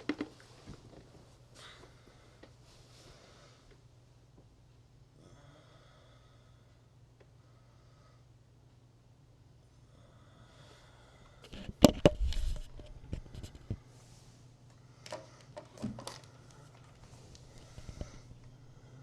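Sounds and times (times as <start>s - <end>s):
faint steady hum: 0.0s - 19.0s
person breathing softly: 5.2s - 8.4s, 9.8s - 11.6s, 16.2s - 19.0s
sharp clicks and knocks: 11.5s - 13.8s.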